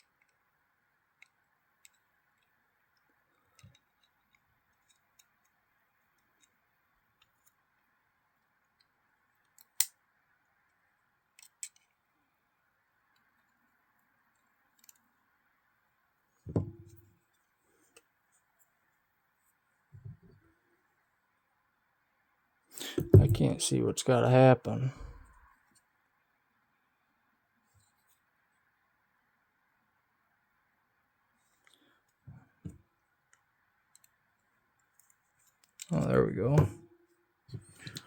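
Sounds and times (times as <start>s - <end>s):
small metallic clicks: 1.2s - 7.7s, 8.7s - 10.0s, 11.3s - 12.0s, 14.3s - 15.1s.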